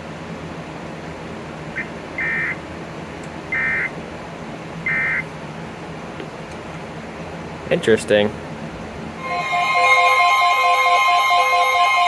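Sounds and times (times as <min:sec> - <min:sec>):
digital data tone bursts: 0:01.8 - 0:02.6, 0:03.5 - 0:03.9, 0:04.9 - 0:05.3.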